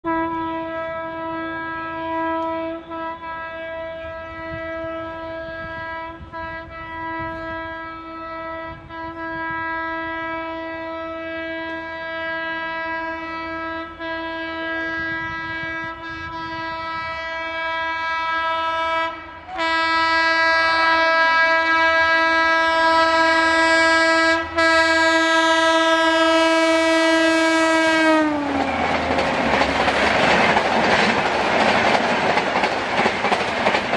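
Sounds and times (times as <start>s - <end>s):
locomotive horn honking: 0.0s - 29.3s
train coaches rushing and clattering: 19.4s - 33.9s.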